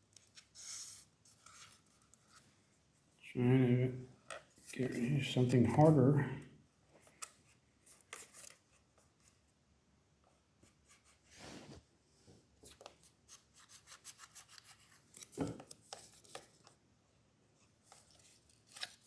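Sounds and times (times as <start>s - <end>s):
scraping at laptop touchpad: 10.6s - 11.9s.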